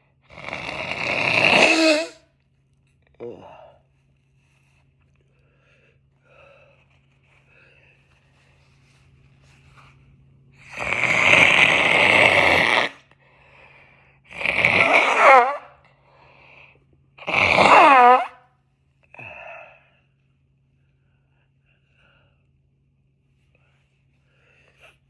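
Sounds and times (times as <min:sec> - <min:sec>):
wet nose blowing: 0:00.3 - 0:02.3, 0:10.6 - 0:13.1, 0:14.3 - 0:15.8, 0:17.2 - 0:18.4.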